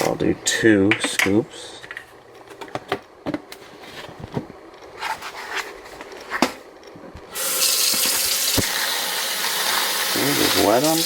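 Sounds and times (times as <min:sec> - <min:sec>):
kitchen tap running: 0:07.4 - 0:11.0.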